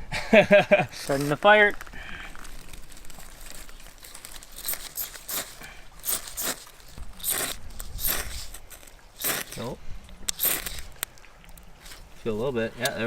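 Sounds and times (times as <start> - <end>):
kindling crinkling and scraping: 0.7 - 13.0.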